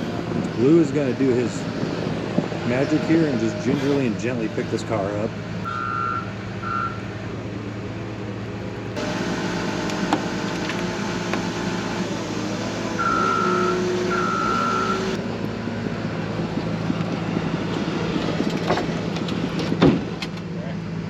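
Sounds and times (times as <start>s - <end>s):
tow truck engine running: 0.0s - 21.0s
truck warning beeper: 5.6s - 7.2s, 9.0s - 15.2s.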